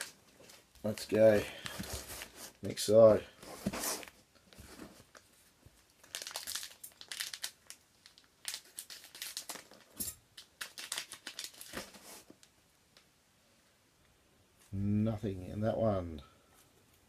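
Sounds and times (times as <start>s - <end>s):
wrappers tearing and crinkling: 0.0s - 2.3s, 5.8s - 12.5s.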